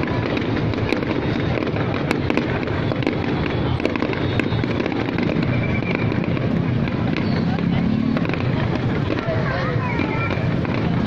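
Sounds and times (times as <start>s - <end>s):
fireworks sharp cracks: 0.0s - 11.0s
low rumble of fireworks: 0.0s - 11.0s.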